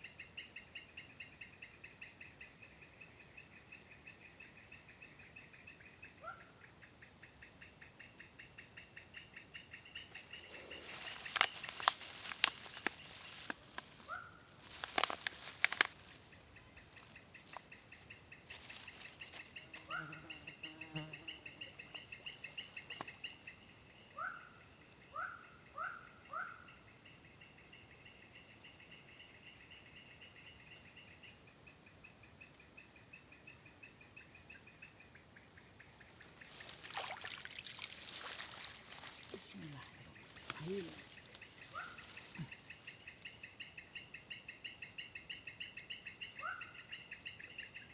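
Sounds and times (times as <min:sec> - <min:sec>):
insect trilling: 0:09.2 - 0:24.4, 0:35.8 - 0:47.9
sharp clicks and rustles: 0:10.8 - 0:16.3.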